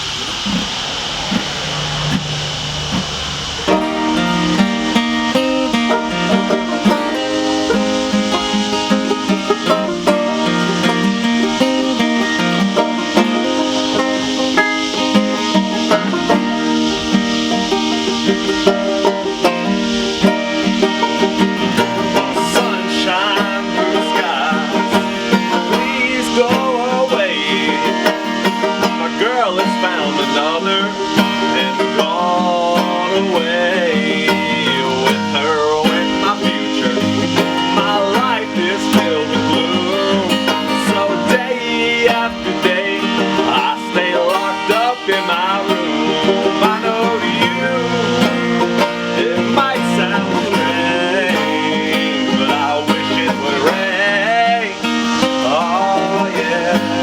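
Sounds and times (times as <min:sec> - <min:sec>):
acoustic guitar: 0:00.0 - 0:57.0
banjo playing: 0:02.1 - 0:57.0
person singing: 0:03.7 - 0:57.0.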